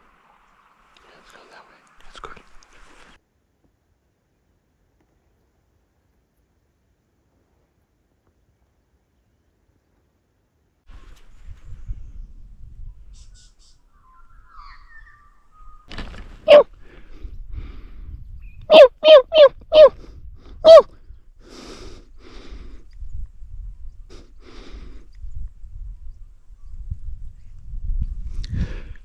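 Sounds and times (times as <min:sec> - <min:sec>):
short loud animal calls: 0:16.5 - 0:16.7, 0:18.7 - 0:20.0, 0:20.6 - 0:20.9.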